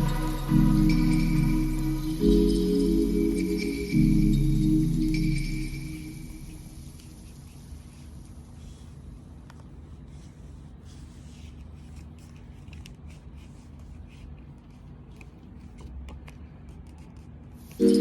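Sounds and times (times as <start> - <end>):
low steady hum: 0.0 - 11.7.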